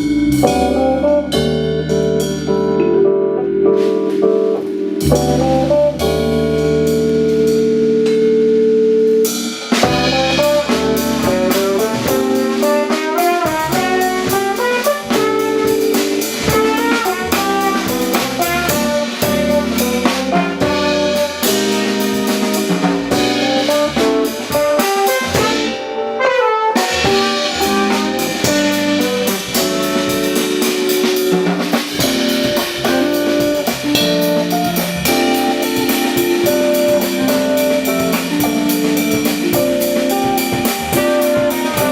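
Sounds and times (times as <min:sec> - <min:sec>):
trumpet melody: 0:00.0 - 0:02.0, 0:02.8 - 0:08.1, 0:09.0 - 0:41.9
drum kit with cymbals: 0:00.0 - 0:41.9
keyboard with bass: 0:00.0 - 0:41.9
electric guitar: 0:26.8 - 0:41.9.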